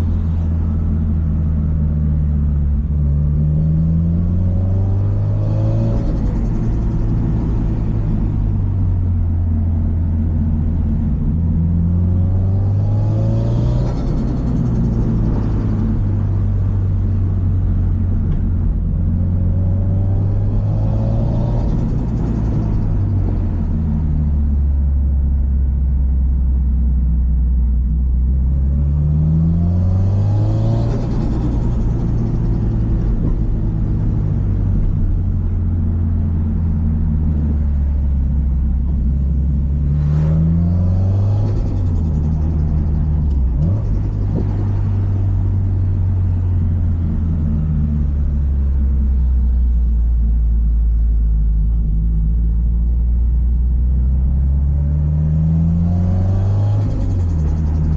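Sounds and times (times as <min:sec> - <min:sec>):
car engine revving: 0:00.0 - 0:25.0, 0:28.4 - 0:51.0, 0:52.8 - 0:57.9.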